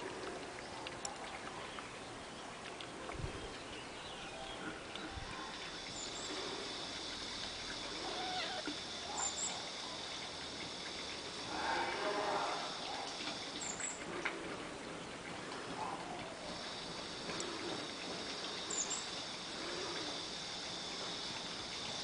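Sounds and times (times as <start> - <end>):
steady high hiss: 4.0 - 22.0
kittens mewing: 8.0 - 8.8.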